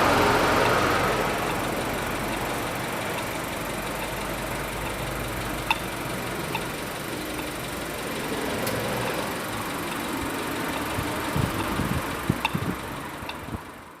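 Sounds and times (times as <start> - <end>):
crossing signal high pips: 0.0 - 8.1
vehicle engines running: 0.0 - 14.0.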